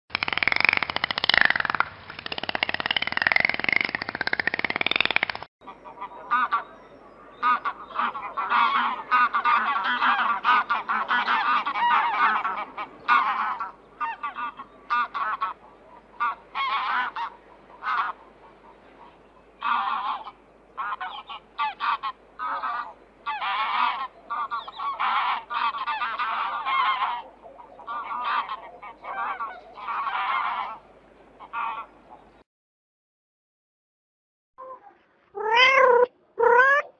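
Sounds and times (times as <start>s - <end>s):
geese honking: 5.6s - 32.4s.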